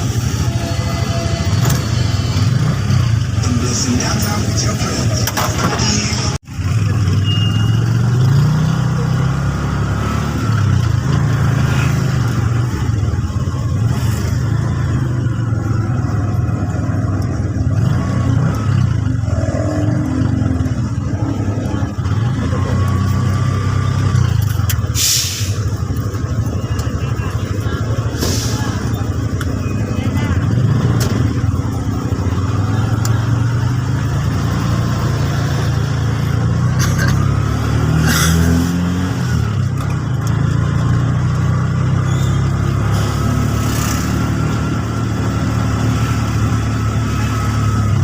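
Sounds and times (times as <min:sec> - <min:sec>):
vehicle engine and road noise: 0:00.0 - 0:48.0
brief hisses: 0:25.0 - 0:25.6.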